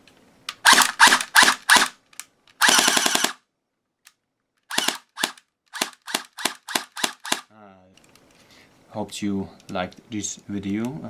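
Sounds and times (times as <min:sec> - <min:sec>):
airsoft gun shots: 0:00.6 - 0:01.9, 0:02.6 - 0:03.4, 0:04.7 - 0:07.4.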